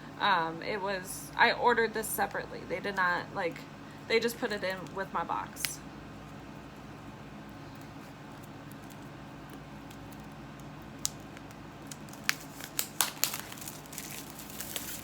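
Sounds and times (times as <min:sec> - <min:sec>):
low room hum: 0:00.0 - 0:15.0
packaging clicks: 0:07.8 - 0:15.0.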